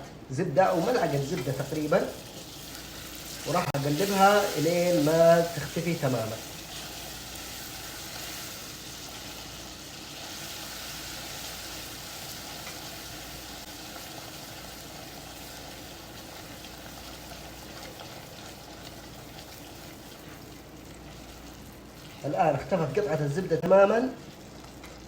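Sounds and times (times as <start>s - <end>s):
butter sizzling in a pan: 0.6s - 25.0s.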